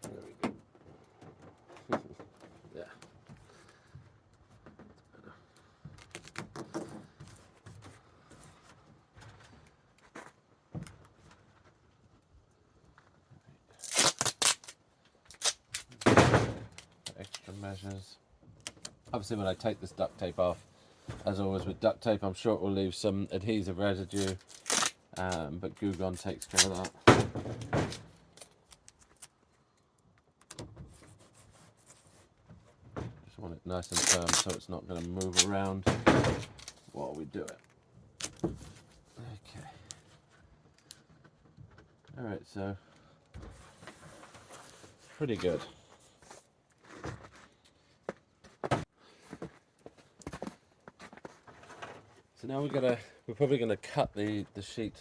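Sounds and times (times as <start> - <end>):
soft handling rustle: 16.8 - 18.3, 36.4 - 55.0.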